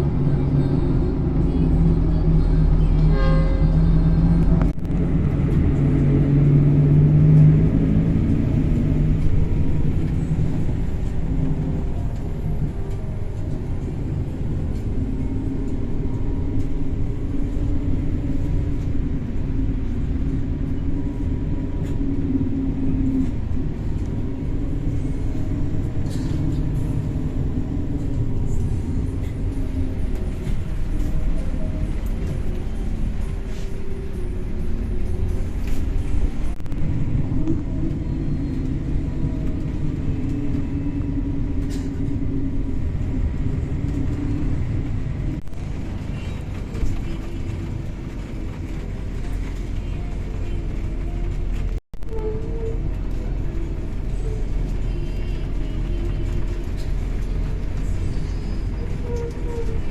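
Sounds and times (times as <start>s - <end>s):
vehicle engine rumbling: 0.0s - 59.9s.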